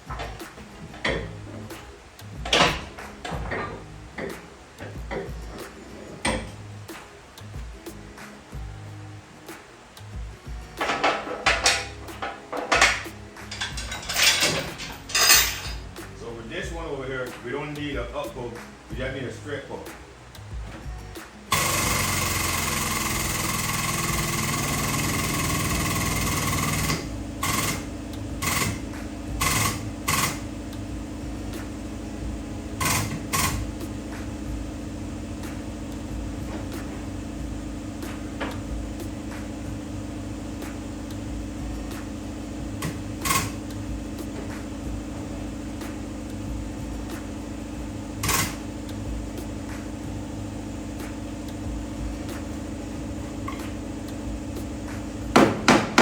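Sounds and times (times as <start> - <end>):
low machine hum: 0.0 - 56.0
machine whine: 20.6 - 56.0.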